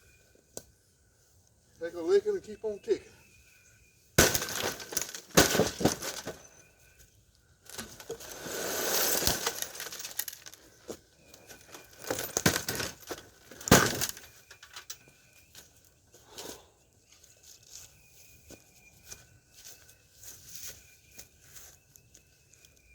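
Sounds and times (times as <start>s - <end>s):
glass breaking: 4.2s - 6.4s, 13.7s - 14.3s.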